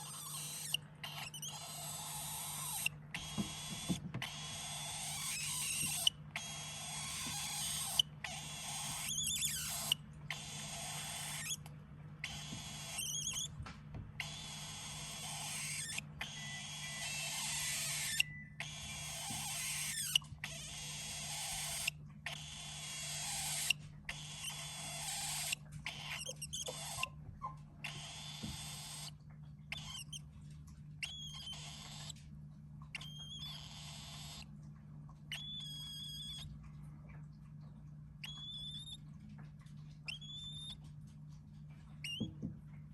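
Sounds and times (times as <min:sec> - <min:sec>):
bird chick snoring: 0:00.0 - 0:11.6, 0:12.3 - 0:13.5, 0:14.2 - 0:27.1, 0:33.0 - 0:34.4.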